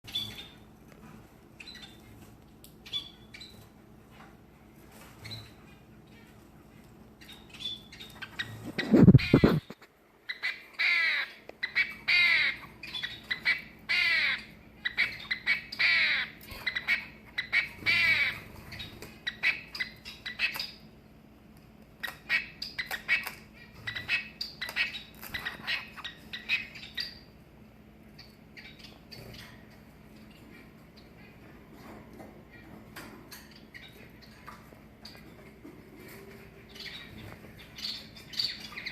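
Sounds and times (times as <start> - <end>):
finch squawking call: 7.6 - 20.8.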